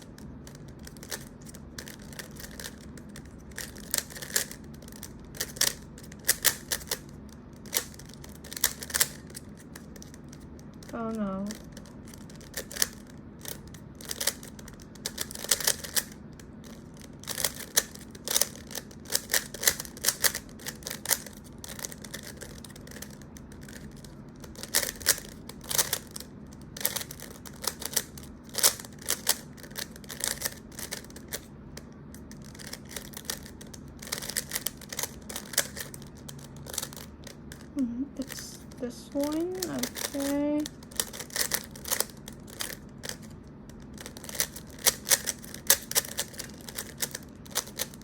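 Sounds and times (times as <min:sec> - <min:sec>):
puzzle cube plastic clicks: 0:00.0 - 0:48.0.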